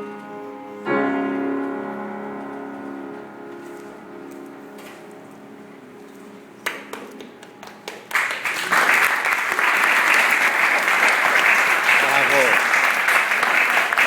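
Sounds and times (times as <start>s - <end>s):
piano chord: 0.0s - 8.2s
audience applause: 6.6s - 14.0s.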